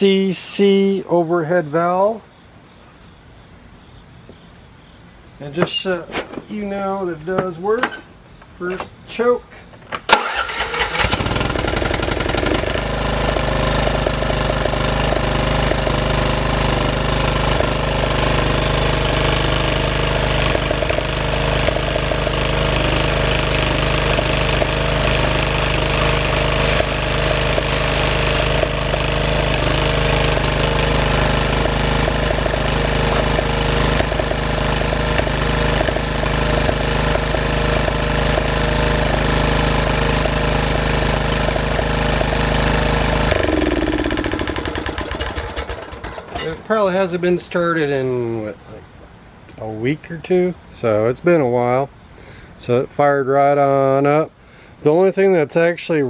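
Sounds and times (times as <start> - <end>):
mower engine starting and running: 5.4 - 48.8.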